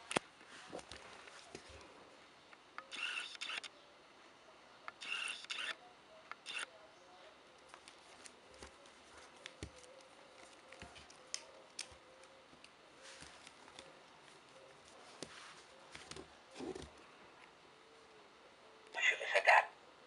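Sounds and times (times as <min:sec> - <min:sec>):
handling rustles: 0:07.6 - 0:17.0.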